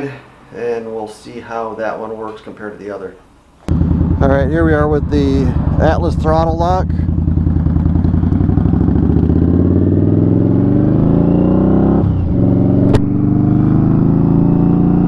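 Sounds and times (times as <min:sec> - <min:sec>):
motorcycle engine accelerating: 0:03.7 - 0:15.0
sharp click: 0:12.8 - 0:13.1.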